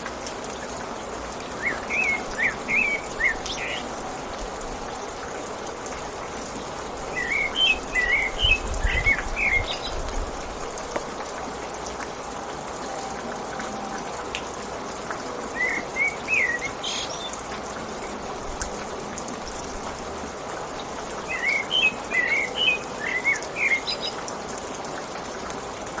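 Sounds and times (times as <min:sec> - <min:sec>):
rain falling: 0:00.0 - 0:26.0
songbird chirping and warbling: 0:12.9 - 0:14.6, 0:15.5 - 0:17.4, 0:21.3 - 0:24.2.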